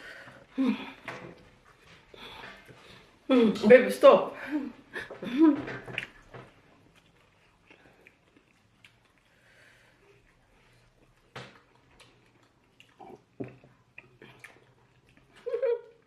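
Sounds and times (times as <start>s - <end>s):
wet eating mouth sounds: 5.9s - 16.0s.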